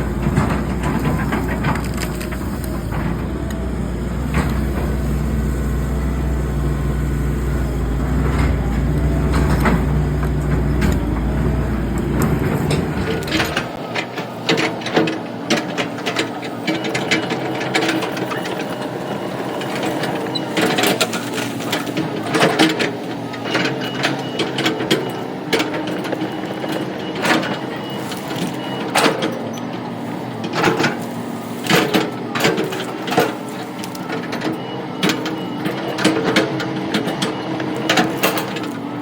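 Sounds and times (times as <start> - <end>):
sharp knocks and clanks: 0.0 - 13.8
machine engine running: 0.0 - 28.8.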